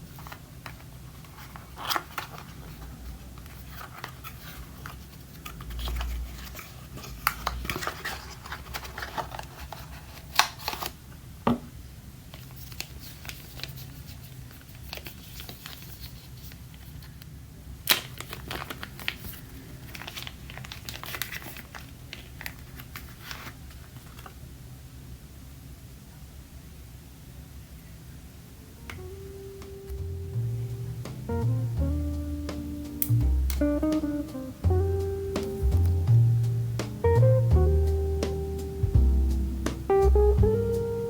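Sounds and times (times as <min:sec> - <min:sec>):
packaging crinkling and rustling: 0:00.0 - 0:11.1, 0:12.3 - 0:24.5.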